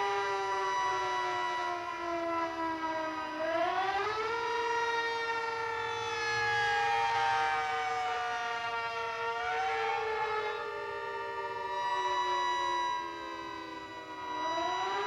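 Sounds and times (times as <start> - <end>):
tornado sirens wailing: 0.0 - 15.0.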